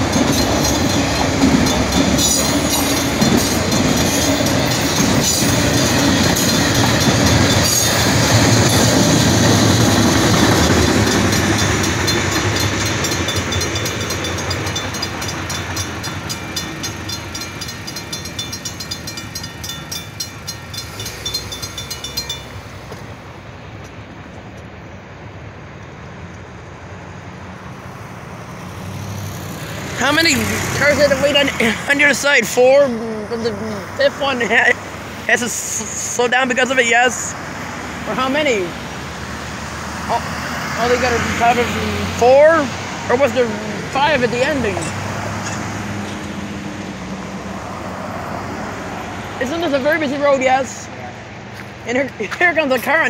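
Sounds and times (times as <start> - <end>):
train wheels clickety-clack: 0.0 - 23.1.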